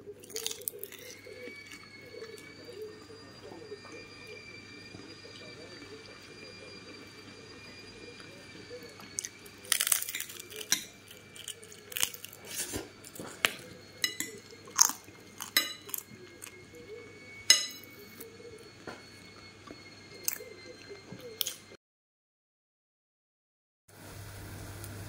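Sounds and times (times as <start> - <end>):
kitchen utensils clicking and knocking: 9.3 - 16.6.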